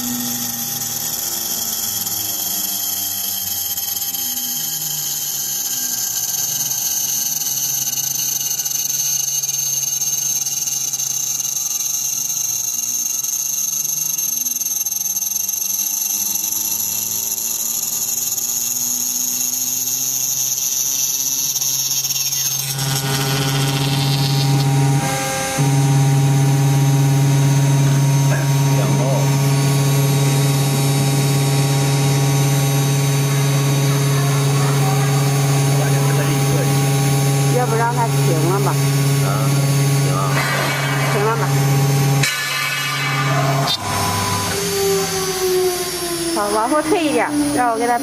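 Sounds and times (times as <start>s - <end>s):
motor tones rising and falling: 0.0s - 8.5s, 16.1s - 47.6s
router spindle whine: 0.0s - 47.8s
steady low hum: 22.2s - 45.4s.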